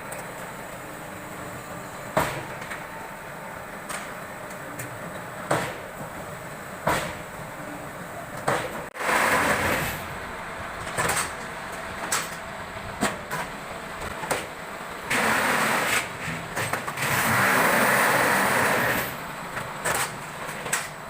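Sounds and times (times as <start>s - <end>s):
machine mechanical hum: 0.0s - 21.0s.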